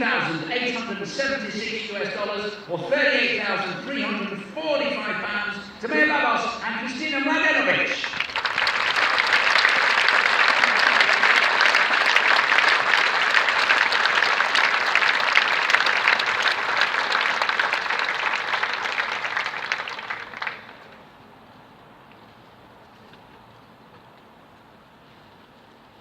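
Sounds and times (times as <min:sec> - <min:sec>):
crowd applauding: 0:07.5 - 0:21.0.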